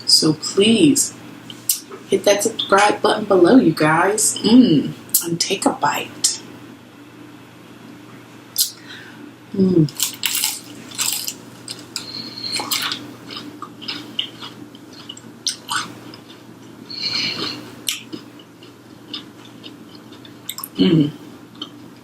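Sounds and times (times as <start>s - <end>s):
crunchy chewing of fried chicken: 9.9s - 21.9s.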